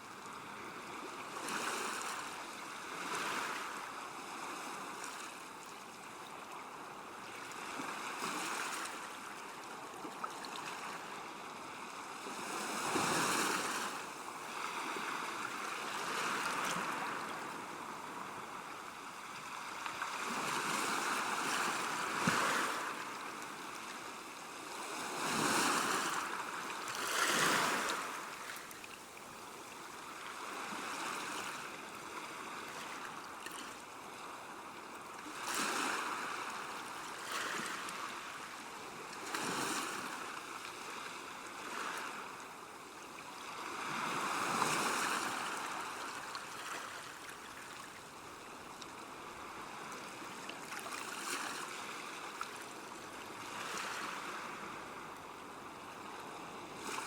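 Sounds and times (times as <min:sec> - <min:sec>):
river water washing along bank: 0:12.0 - 0:33.4.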